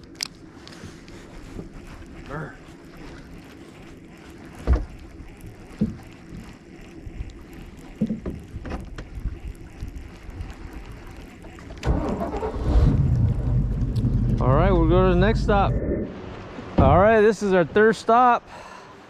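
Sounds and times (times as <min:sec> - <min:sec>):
wind: 0:00.0 - 0:19.0
knocks and thumps: 0:16.7 - 0:17.1.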